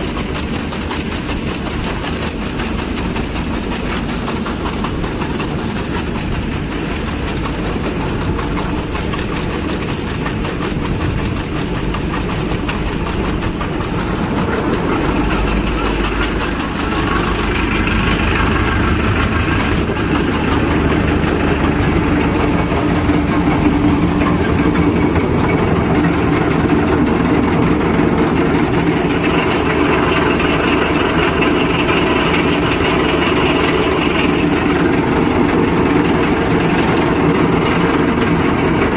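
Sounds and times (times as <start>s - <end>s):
combine harvester running: 0.0s - 38.9s.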